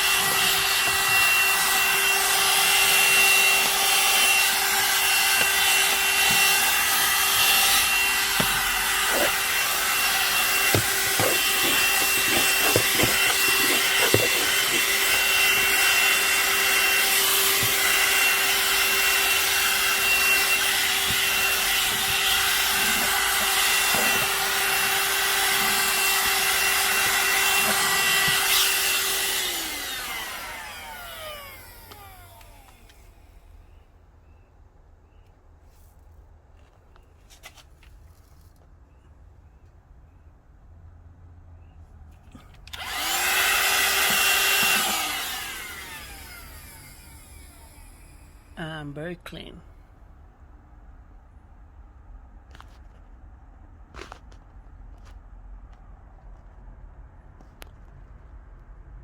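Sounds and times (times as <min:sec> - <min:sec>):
vacuum motor spinning down: 0:00.0 - 0:33.2, 0:42.7 - 0:48.6
handheld vacuum running: 0:00.0 - 0:33.3, 0:42.7 - 0:48.6.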